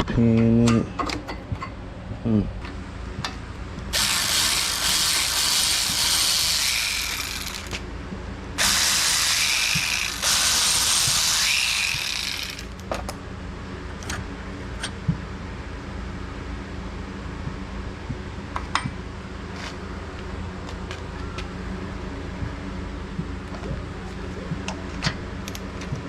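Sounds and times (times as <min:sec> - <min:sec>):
power wrench whirring: 0:03.9 - 0:07.8, 0:08.6 - 0:12.8.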